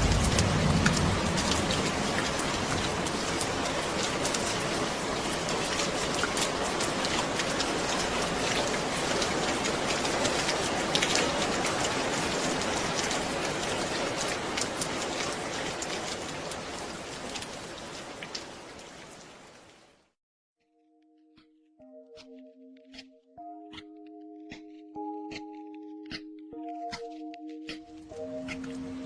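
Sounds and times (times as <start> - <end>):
raindrops ticking on surface: 0.0 - 20.0, 23.7 - 29.0
steady rain falling: 0.0 - 20.2, 27.6 - 29.0.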